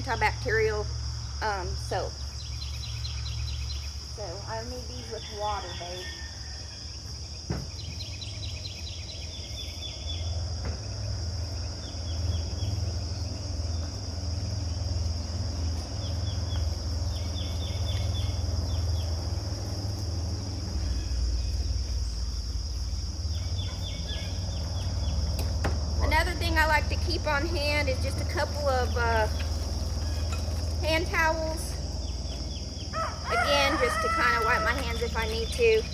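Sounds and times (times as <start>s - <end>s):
birds chirping rapidly: 0.0s - 35.9s
insects buzzing: 0.0s - 35.9s
low rumble: 9.2s - 33.0s.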